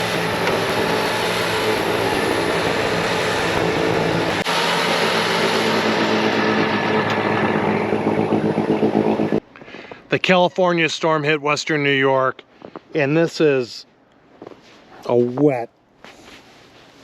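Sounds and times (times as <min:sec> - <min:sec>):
diesel engine at high revs: 0:00.0 - 0:09.4
snowblower whirring: 0:00.0 - 0:09.4.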